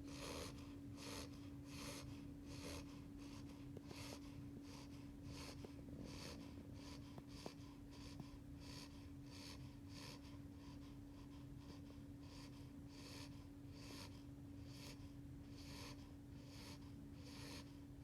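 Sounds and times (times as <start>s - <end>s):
puppy snoring: 0.0s - 18.0s
steady low hum: 0.0s - 18.0s.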